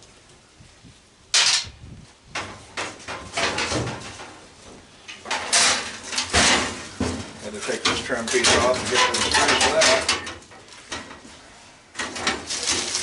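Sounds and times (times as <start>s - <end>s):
stove parts clanking: 5.1s - 11.2s, 11.9s - 13.0s.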